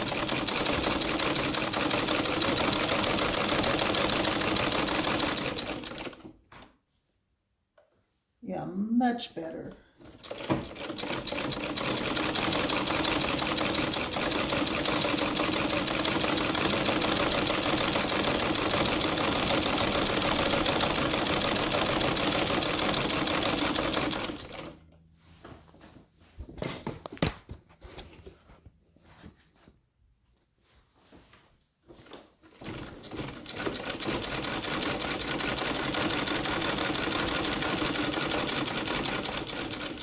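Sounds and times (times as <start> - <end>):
sewing machine clattering: 0.0 - 6.4, 10.0 - 24.8, 32.1 - 40.0.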